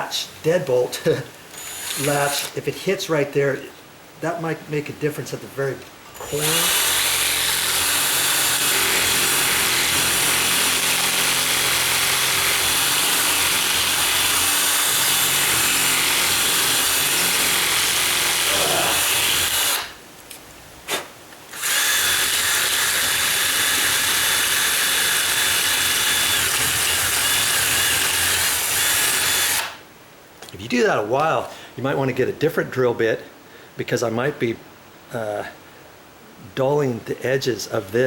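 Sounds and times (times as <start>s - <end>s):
power drill grinding metal: 1.5s - 2.6s, 6.1s - 20.0s, 21.5s - 29.8s.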